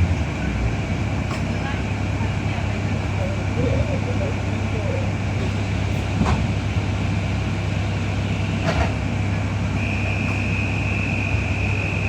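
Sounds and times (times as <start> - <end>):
bus engine hum and road noise: 0.0 - 12.0
steady high whistle: 9.8 - 12.0.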